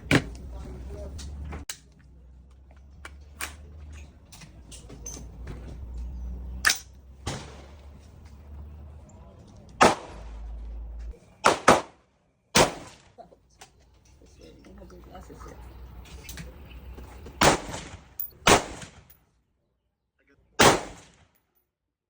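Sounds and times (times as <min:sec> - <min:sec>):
gunshots: 0:06.7 - 0:08.0, 0:09.8 - 0:10.6, 0:11.4 - 0:13.2, 0:17.4 - 0:19.1, 0:20.6 - 0:21.3
distant gunshot cracks: 0:09.8 - 0:10.4, 0:11.4 - 0:12.0, 0:12.6 - 0:13.2, 0:17.4 - 0:19.1, 0:20.6 - 0:21.3.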